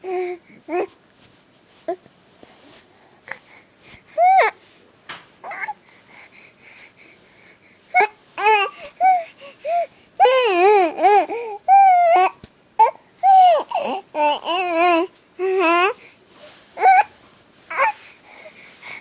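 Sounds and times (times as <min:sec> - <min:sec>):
baby babbling and cooing: 0:00.0 - 0:01.0, 0:04.1 - 0:04.6, 0:05.4 - 0:05.8, 0:07.9 - 0:16.1, 0:16.8 - 0:19.0.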